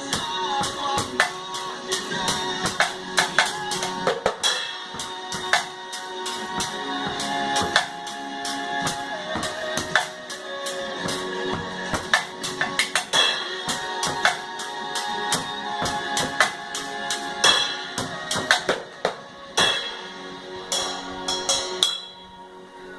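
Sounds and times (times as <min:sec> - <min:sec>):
backing track with held chords: 0:00.0 - 0:22.9.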